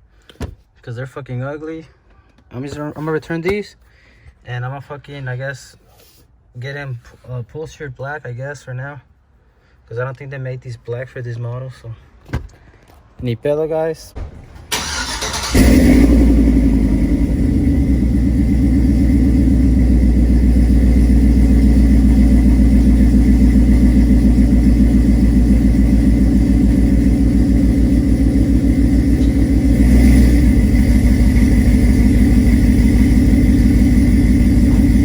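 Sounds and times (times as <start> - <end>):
engine cranking: 14.2 - 35.0
truck engine idling: 14.2 - 35.0.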